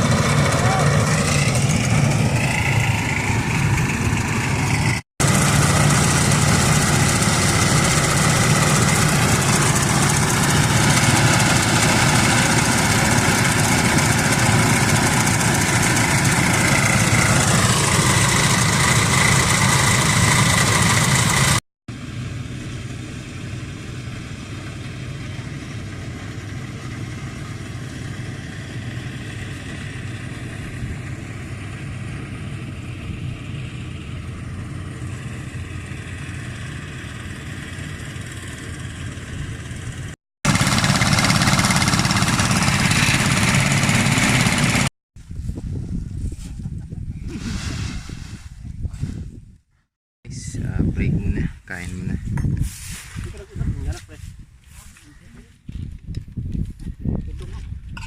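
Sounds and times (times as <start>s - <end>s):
farm machine running: 0.0s - 44.9s.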